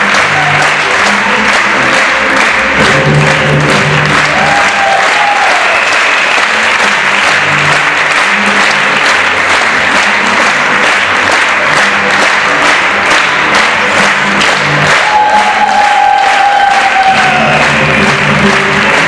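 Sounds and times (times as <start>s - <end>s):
audience applauding: 0.0s - 19.0s
ballet music: 0.0s - 19.0s.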